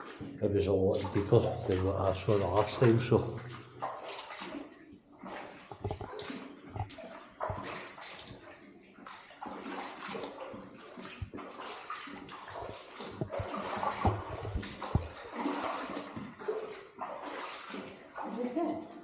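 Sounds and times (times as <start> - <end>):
wading through water: 0.0 - 19.0.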